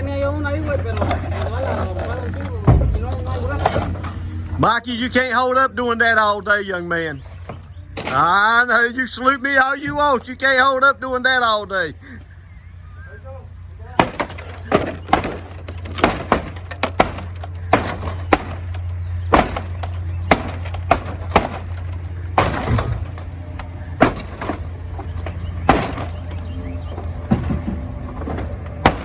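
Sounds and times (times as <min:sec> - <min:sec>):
steady low hum: 0:00.0 - 0:29.0
hammer blows breaking material: 0:14.0 - 0:23.2, 0:24.0 - 0:24.7, 0:25.6 - 0:26.3.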